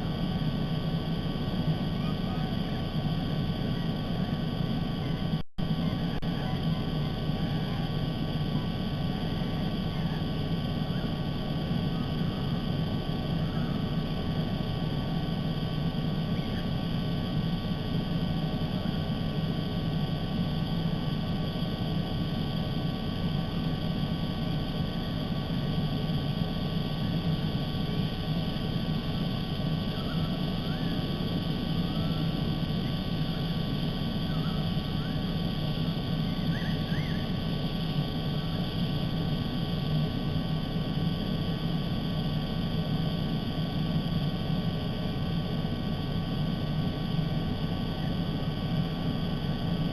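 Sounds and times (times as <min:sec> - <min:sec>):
low rumble and hiss: 0:00.0 - 0:49.9
faint bird chirps: 0:16.3 - 0:16.7, 0:29.9 - 0:31.0, 0:34.2 - 0:35.2, 0:36.2 - 0:37.4.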